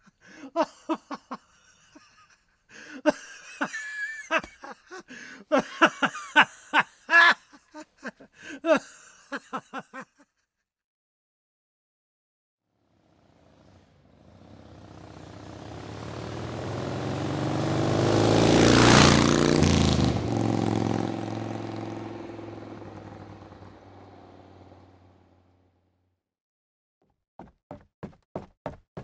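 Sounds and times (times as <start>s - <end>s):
motor vehicle driving past: 12.8s - 25.7s.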